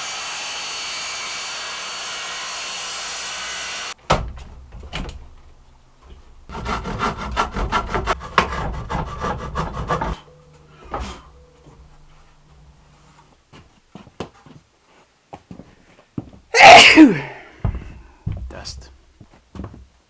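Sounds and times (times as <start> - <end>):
hand saw cutting board: 0.0 - 4.0, 6.5 - 11.3
power tool running: 0.0 - 4.0.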